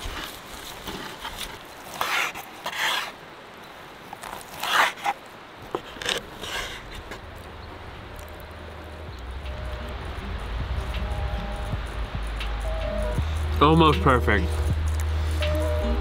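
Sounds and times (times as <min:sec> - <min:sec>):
rasping scrapes: 0:00.8 - 0:03.2, 0:04.4 - 0:07.2.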